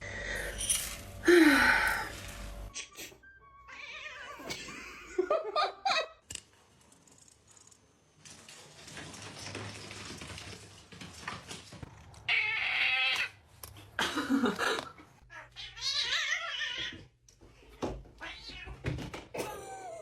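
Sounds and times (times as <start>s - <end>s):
cat meowing: 3.6s - 4.5s.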